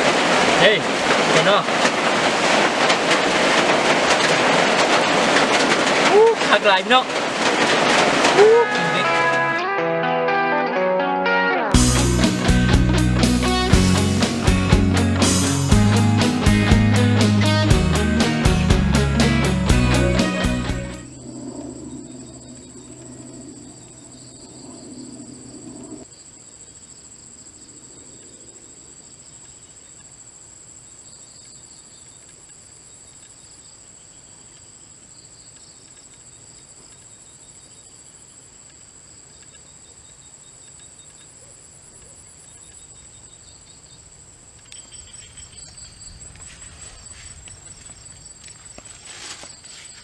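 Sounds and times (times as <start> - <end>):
insects chirring: 20.9 - 50.0.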